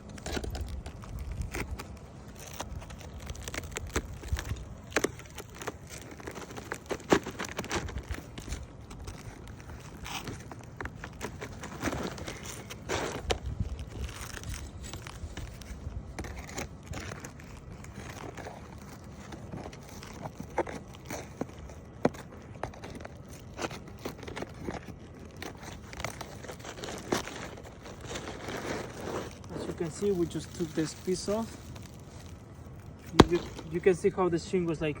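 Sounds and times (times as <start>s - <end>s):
roof shingle tearing and cracking: 0.0s - 34.2s
sharp crack: 33.0s - 34.0s.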